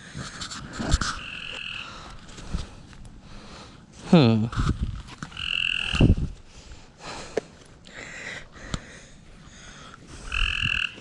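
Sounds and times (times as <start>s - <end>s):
frog croaking: 1.0s - 2.0s, 5.2s - 6.2s, 10.2s - 11.0s.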